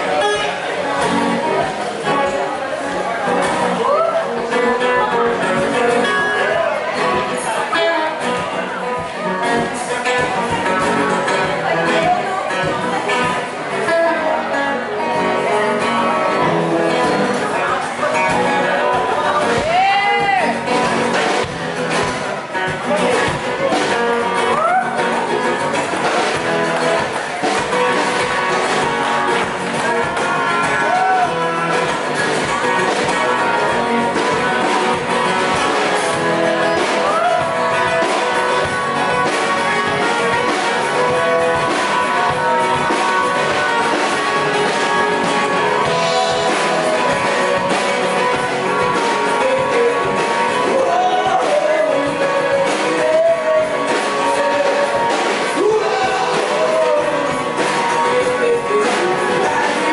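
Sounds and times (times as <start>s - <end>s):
rock band playing live: 0.0s - 59.9s
person singing: 22.8s - 59.9s.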